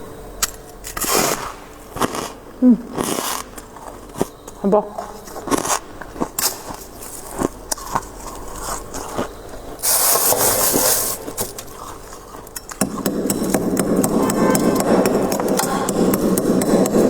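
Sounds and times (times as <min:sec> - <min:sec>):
freezer frost being scraped: 0:00.8 - 0:02.4, 0:05.2 - 0:13.1.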